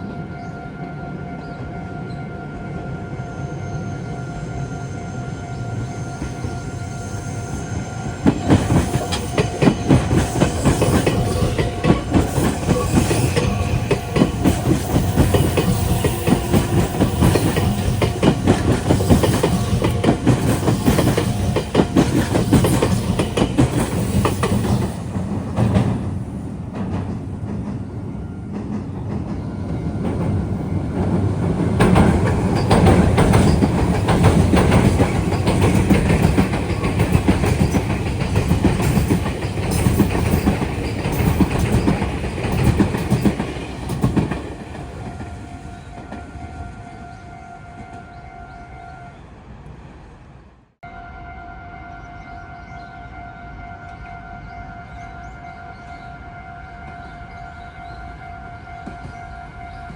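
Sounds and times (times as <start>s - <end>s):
train rumble: 0.0s - 50.8s
train wheels clattering over rail joints: 8.2s - 27.9s, 28.6s - 46.2s.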